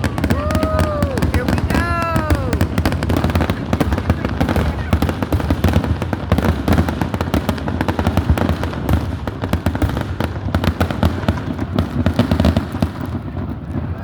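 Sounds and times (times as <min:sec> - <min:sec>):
fireworks crackling and popping: 0:00.0 - 0:14.0.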